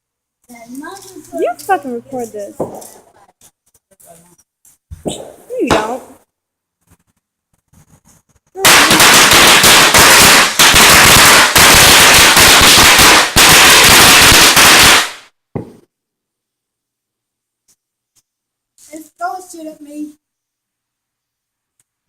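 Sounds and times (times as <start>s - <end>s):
firecrackers crackling: 0.5s - 3.4s, 5.0s - 6.3s, 8.5s - 15.9s.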